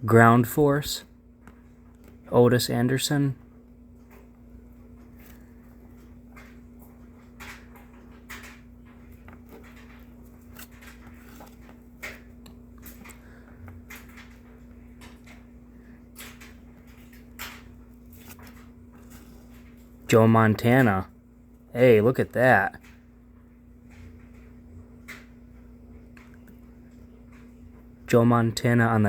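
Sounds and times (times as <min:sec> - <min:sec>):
steady low hum: 0:00.0 - 0:29.0
cards clicking and rustling: 0:05.0 - 0:15.5, 0:16.1 - 0:20.0.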